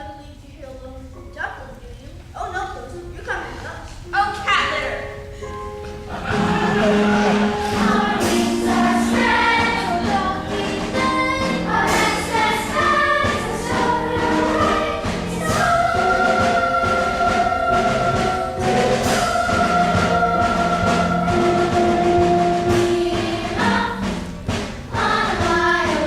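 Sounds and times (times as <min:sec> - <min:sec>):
musical accompaniment: 0:01.1 - 0:26.0
cast singing in chorus: 0:06.1 - 0:22.2.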